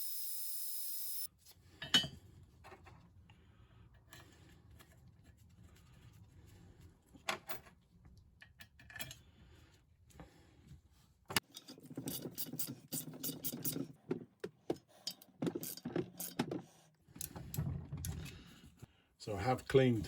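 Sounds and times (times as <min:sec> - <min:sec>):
high hiss: 0:00.0 - 0:01.3.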